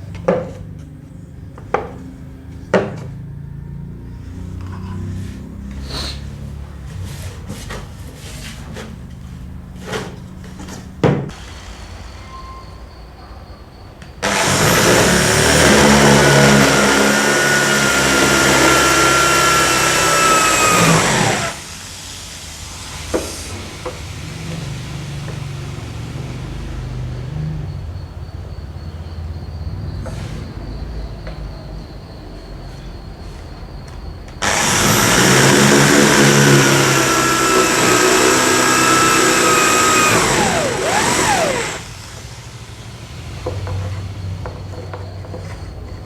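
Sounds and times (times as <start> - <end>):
power tool running: 14.2 - 27.0, 34.4 - 44.2.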